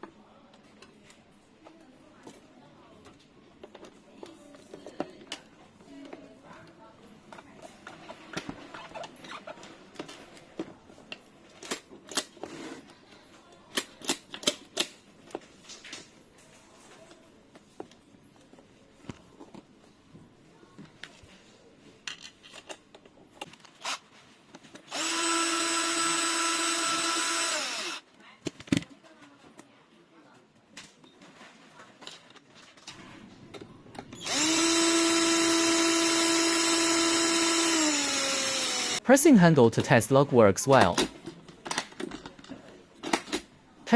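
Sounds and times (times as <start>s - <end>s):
power drill running: 24.9s - 28.0s, 34.2s - 39.0s.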